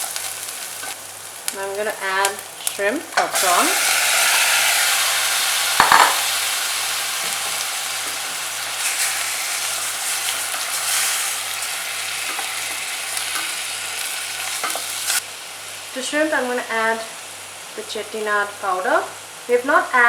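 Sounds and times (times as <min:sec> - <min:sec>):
prawns sizzling in a frying pan: 0:00.0 - 0:20.0.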